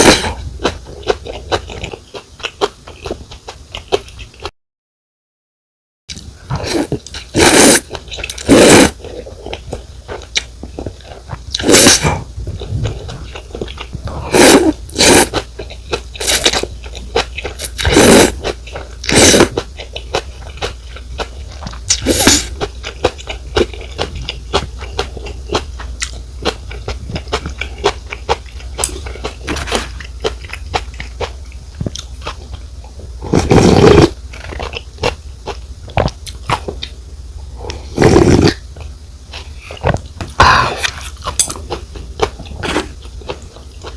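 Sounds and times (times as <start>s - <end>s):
slurping noodles: 6.5s - 9.5s, 11.0s - 15.4s, 17.4s - 19.6s, 21.9s - 22.5s, 33.2s - 34.5s, 37.7s - 38.6s.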